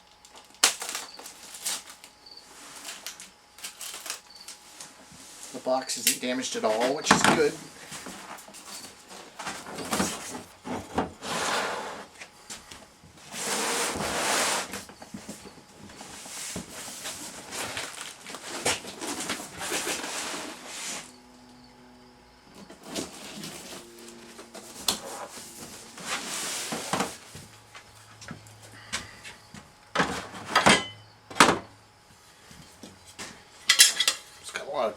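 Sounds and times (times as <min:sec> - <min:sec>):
cardboard box rustling and scraping: 0:06.7 - 0:12.2, 0:13.2 - 0:21.2, 0:22.6 - 0:28.2.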